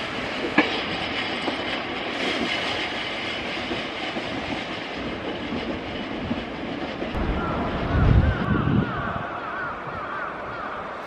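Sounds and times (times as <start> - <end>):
train wheels rumbling on rail: 0.0 - 9.4.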